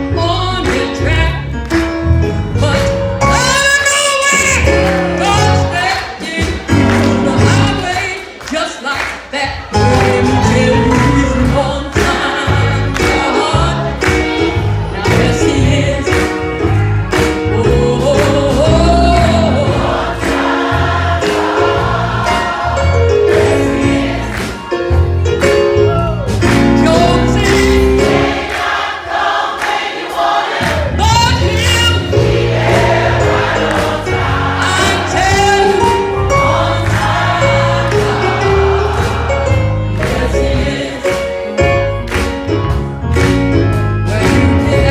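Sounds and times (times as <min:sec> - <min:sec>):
gospel choir singing: 0:04.6 - 0:25.4, 0:26.5 - 0:42.8, 0:44.0 - 0:44.9
low musical accompaniment: 0:09.8 - 0:28.5, 0:30.9 - 0:44.9.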